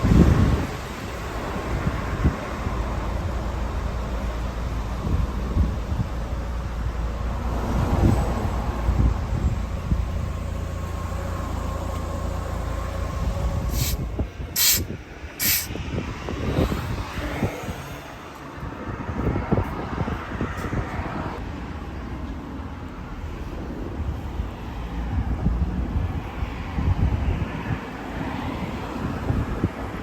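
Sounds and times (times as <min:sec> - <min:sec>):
low vehicle rumble: 0:00.0 - 0:21.4
short sharp hisses: 0:13.7 - 0:14.0, 0:14.6 - 0:15.7.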